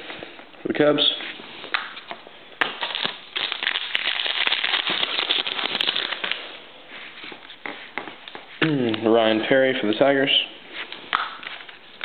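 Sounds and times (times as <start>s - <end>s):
foil wrapper crinkling: 2.6s - 6.6s.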